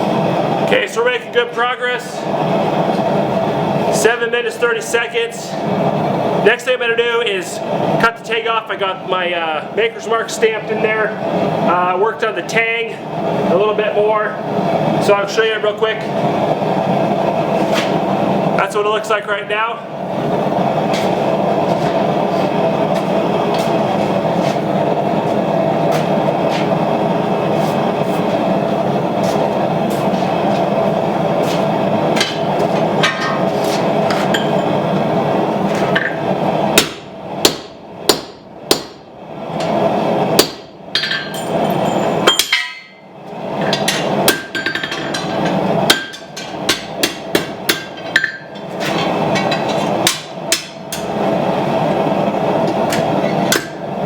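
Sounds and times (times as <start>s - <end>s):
steady rushing noise: 14.4s - 42.0s
hammer blows on hot steel: 36.7s - 39.8s, 40.4s - 43.0s.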